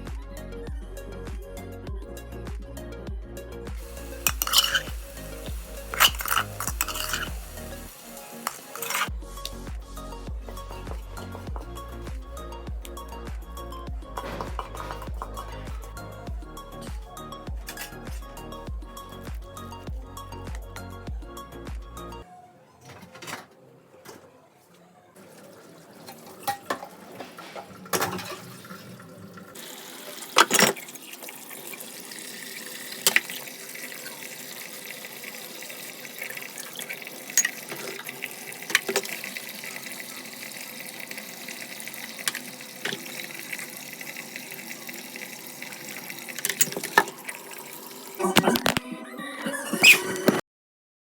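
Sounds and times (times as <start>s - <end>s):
water running from tap into sink: 3.8s - 13.4s, 14.1s - 16.4s, 25.2s - 48.2s.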